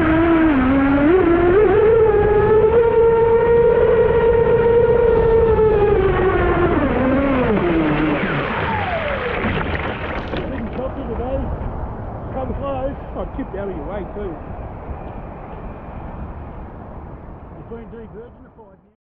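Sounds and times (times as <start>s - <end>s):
electric motor whining: 0.0s - 10.8s.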